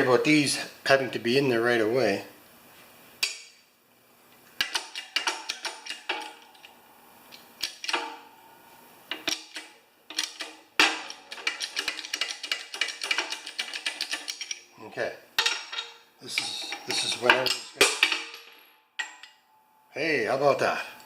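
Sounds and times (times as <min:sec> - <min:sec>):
metal parts clinking: 0:09.1 - 0:14.7, 0:15.4 - 0:19.4.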